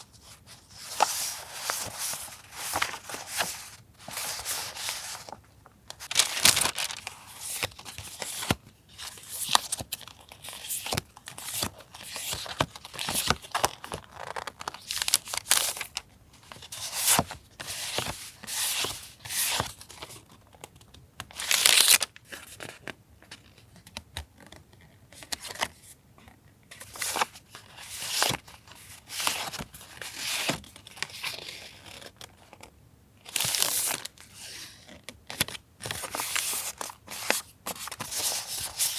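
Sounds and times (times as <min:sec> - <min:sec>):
packaging rustling and crinkling: 0:00.0 - 0:20.4.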